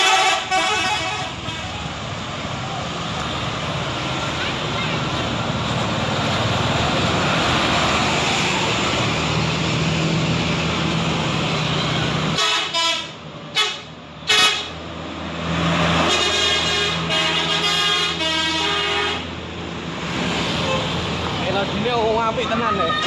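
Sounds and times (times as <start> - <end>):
loud horn blasts: 0.0 - 1.8, 12.3 - 14.8, 16.0 - 19.3
multi-tone bus horn jingle: 0.0 - 1.8, 12.3 - 14.8, 16.0 - 19.4, 20.6 - 21.0
bus engine and road noise: 0.0 - 23.0.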